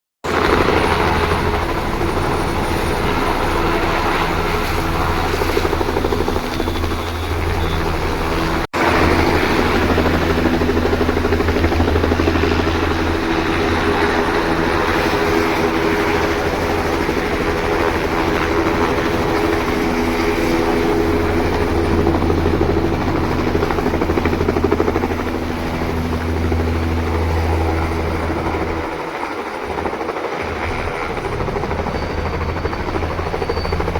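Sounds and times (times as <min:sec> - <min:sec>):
helicopter rotor and engine: 0:00.2 - 0:33.9.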